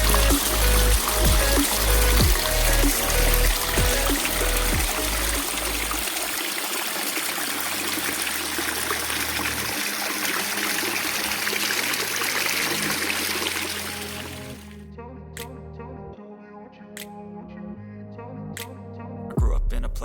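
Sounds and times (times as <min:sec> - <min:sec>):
waterfall rushing: 0:00.0 - 0:14.6.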